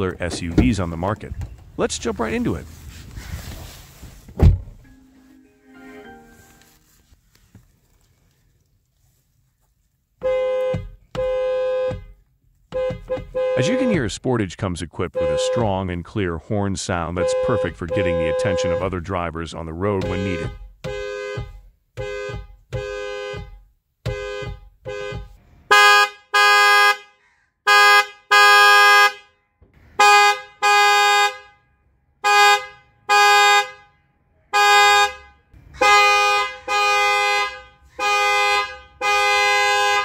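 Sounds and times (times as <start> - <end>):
car horn honking: 10.2 - 40.0.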